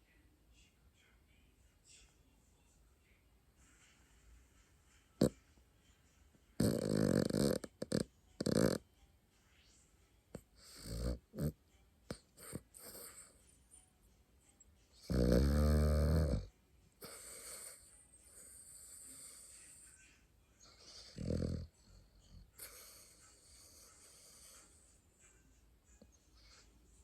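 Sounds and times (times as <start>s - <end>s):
dog snoring: 6.6s - 8.8s, 10.3s - 13.3s, 15.0s - 19.8s, 20.7s - 24.9s.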